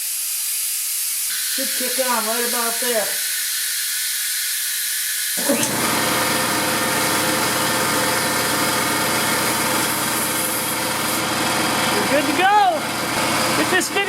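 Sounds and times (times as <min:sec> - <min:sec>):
compressed air hissing: 0:00.0 - 0:12.1
compressor motor running: 0:01.3 - 0:03.5, 0:05.4 - 0:14.0.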